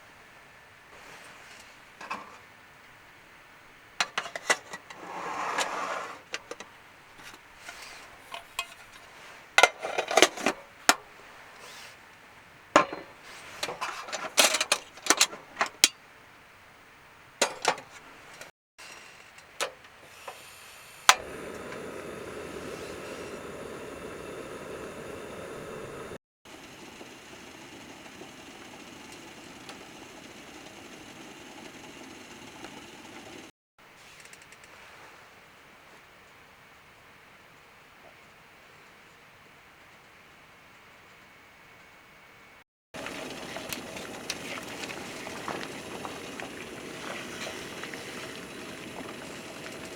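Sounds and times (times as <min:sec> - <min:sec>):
camp cookware clinking and knocking: 0:04.0 - 0:05.0, 0:06.3 - 0:11.0, 0:12.8 - 0:16.0, 0:17.4 - 0:18.0, 0:43.0 - 0:49.9
steady rushing noise: 0:21.2 - 0:26.2.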